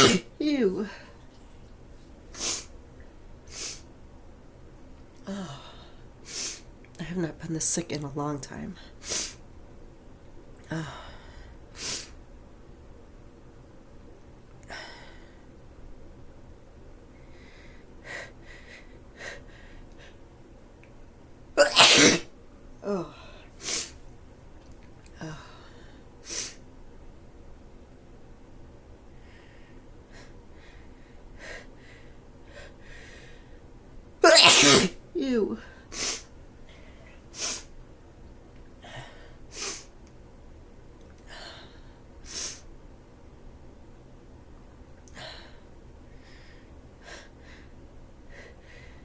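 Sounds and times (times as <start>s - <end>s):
woman sneezing: 0.0s - 0.9s, 21.6s - 22.3s, 34.2s - 36.2s
woman breathing softly: 10.7s - 12.2s, 14.7s - 15.5s, 17.1s - 20.2s, 25.2s - 26.2s, 29.1s - 33.7s, 45.2s - 49.0s.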